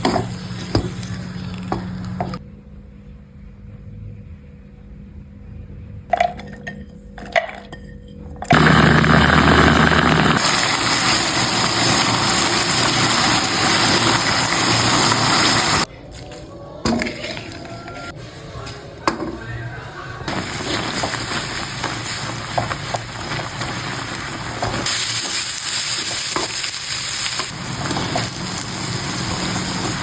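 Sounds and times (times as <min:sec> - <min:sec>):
kitchen knocks and clinks: 0:16.8 - 0:17.7, 0:19.0 - 0:19.5.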